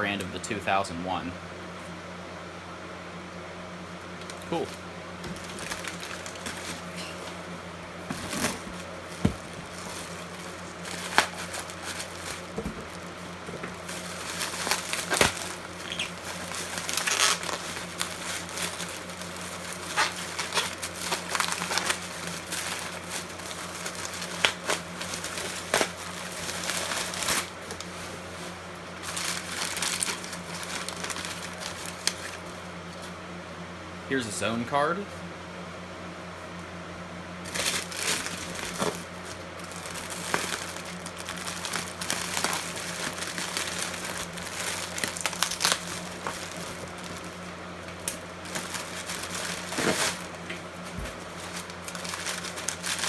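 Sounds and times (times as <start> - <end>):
steady low hum: 0.0 - 53.0
packing material crinkling: 4.2 - 33.1, 37.4 - 53.0.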